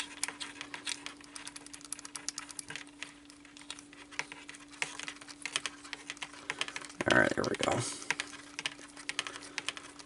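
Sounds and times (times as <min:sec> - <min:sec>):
faint steady hum: 0:00.0 - 0:10.0.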